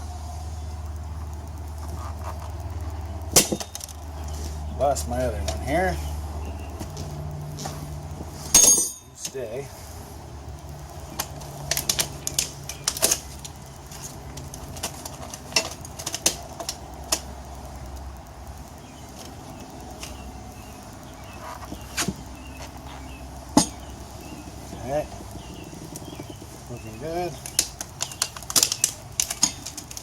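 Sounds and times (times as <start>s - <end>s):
low steady hum: 0.0s - 30.0s
tire irons knocking on wheel rim: 23.5s - 30.0s.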